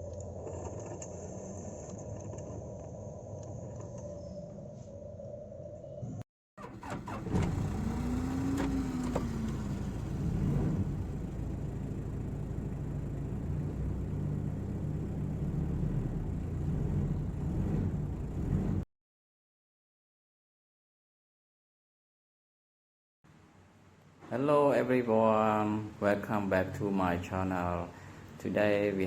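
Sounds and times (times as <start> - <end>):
vehicle engine running: 6.6 - 18.8.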